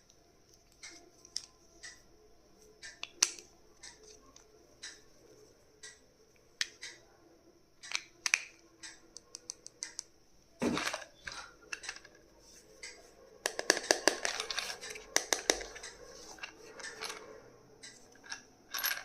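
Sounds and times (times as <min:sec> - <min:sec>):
sharp clicks and taps: 0:12.8 - 0:16.0.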